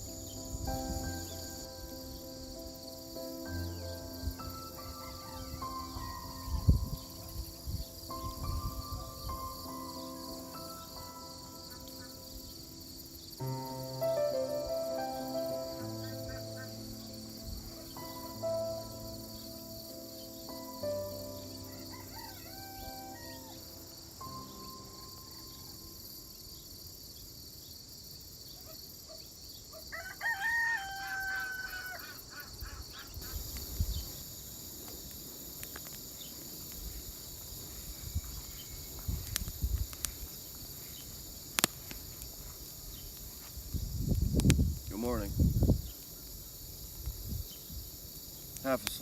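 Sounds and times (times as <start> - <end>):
insect chorus: 0.0 - 49.0
rooster crowing: 4.8 - 6.2, 21.5 - 23.9, 29.9 - 32.2.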